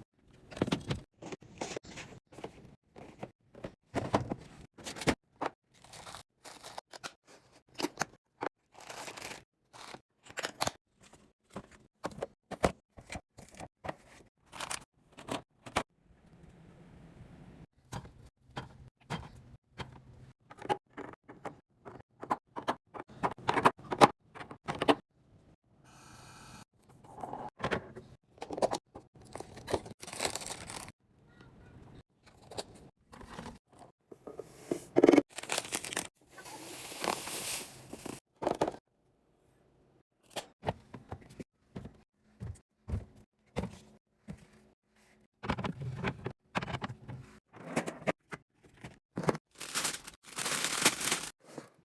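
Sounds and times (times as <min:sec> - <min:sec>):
packaging crinkling and tearing: 0:30.0 - 0:30.9, 0:35.3 - 0:36.1, 0:49.5 - 0:51.3.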